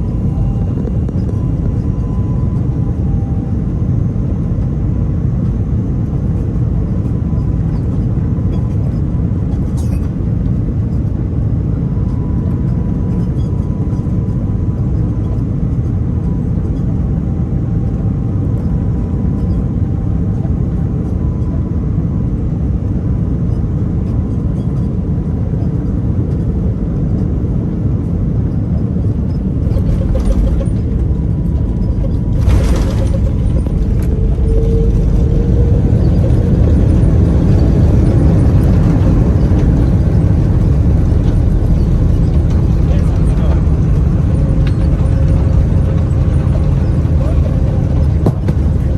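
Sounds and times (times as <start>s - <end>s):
airplane engine rumble in cabin: 0.0s - 48.9s.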